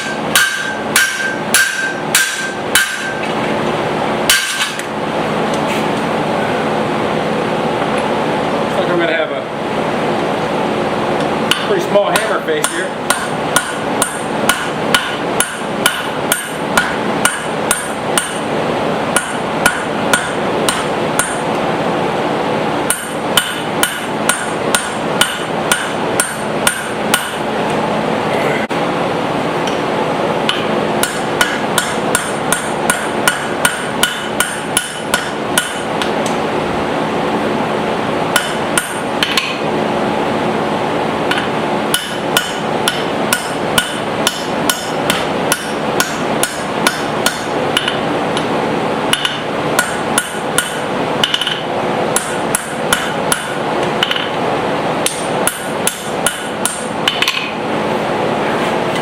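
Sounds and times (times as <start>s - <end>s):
hammer striking metal tool: 0.0s - 3.3s, 4.3s - 4.9s, 11.5s - 18.5s, 19.1s - 21.4s, 22.9s - 27.4s, 30.5s - 36.4s, 38.3s - 39.7s, 41.3s - 48.5s, 49.1s - 54.4s, 55.0s - 57.6s
steady running noise: 0.0s - 59.0s.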